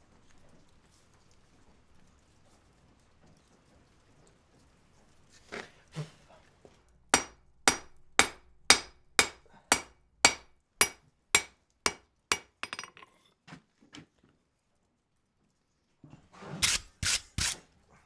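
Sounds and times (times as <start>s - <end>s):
hammer ringing on anvil: 7.2s - 13.0s.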